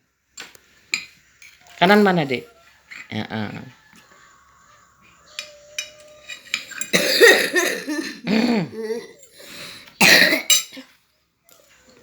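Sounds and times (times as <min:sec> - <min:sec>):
young child coughing: 0:06.9 - 0:09.1, 0:10.0 - 0:10.9.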